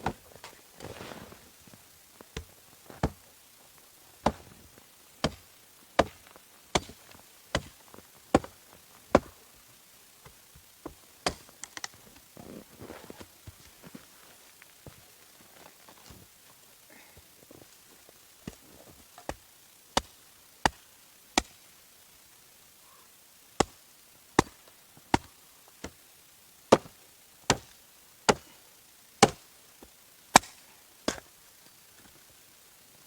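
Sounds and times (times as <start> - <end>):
axe chopping wood: 4.2 - 4.5, 5.2 - 5.4, 6.0 - 8.5, 11.2 - 11.5, 24.4 - 26.0, 26.7 - 27.7, 28.3 - 28.5, 29.2 - 29.5, 30.3 - 31.2.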